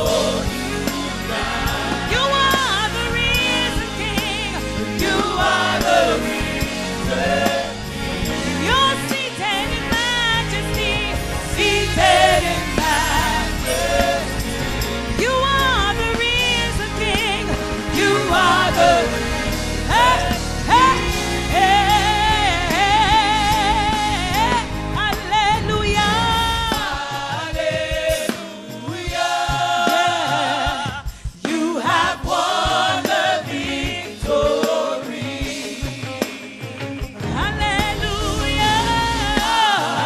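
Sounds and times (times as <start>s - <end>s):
band playing: 0.0s - 40.0s
bass and drums: 0.0s - 40.0s
gospel singers with vibrato: 0.0s - 40.0s.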